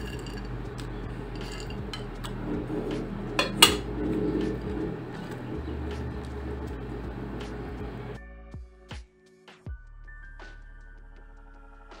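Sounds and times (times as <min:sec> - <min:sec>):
utensil scraping mixing bowl: 0:00.0 - 0:08.2.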